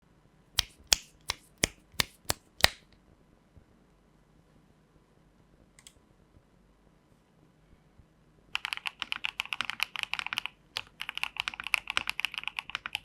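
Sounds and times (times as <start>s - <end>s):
faint keyboard clatter: 8.6s - 13.0s
mechanical keyboard clacks: 8.6s - 13.0s.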